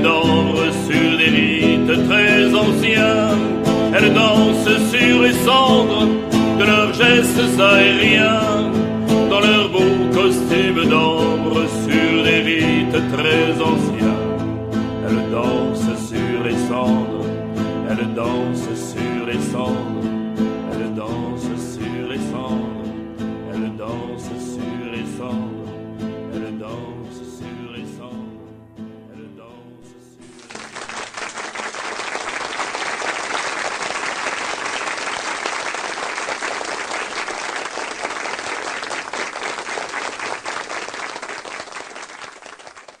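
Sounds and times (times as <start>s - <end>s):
guitar accompaniment: 0.0s - 31.6s
applause: 30.2s - 43.0s.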